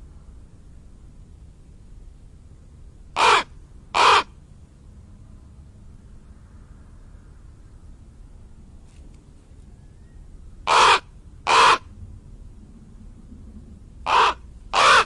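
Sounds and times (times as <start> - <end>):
crow cawing: 3.2 - 4.3, 10.7 - 11.9, 14.0 - 15.0.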